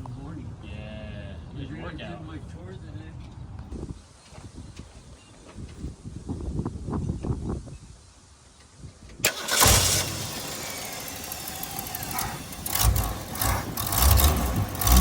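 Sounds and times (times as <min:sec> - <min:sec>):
car engine starting and running: 0:09.2 - 0:15.0
engine throttle blips: 0:09.2 - 0:15.0.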